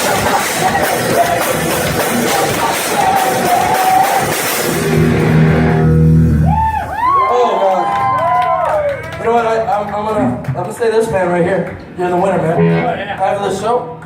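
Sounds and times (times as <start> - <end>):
heavy rock band playing: 0.0 - 7.0, 12.6 - 13.4.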